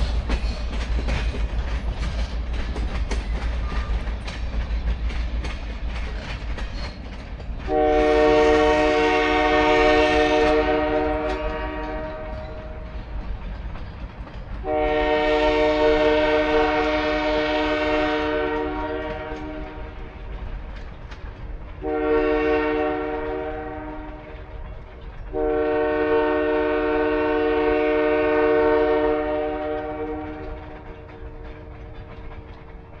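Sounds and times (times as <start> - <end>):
train air horn blasts: 7.7 - 13.0, 14.6 - 20.0, 21.8 - 24.5, 25.3 - 31.8.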